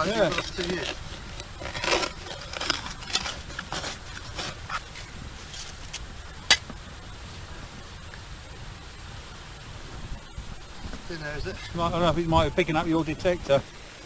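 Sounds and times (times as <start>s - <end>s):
spade scraping wet sand: 0.0s - 6.6s.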